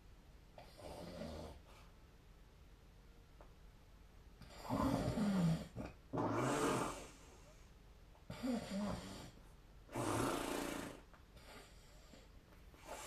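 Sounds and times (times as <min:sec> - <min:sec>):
person snoring: 0:04.5 - 0:07.2, 0:08.3 - 0:11.1.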